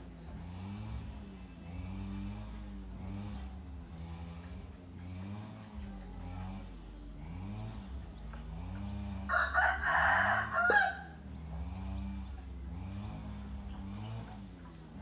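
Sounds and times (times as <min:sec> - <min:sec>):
faint low pulsing sound: 0:00.0 - 0:15.0
rooster crowing: 0:09.2 - 0:11.3.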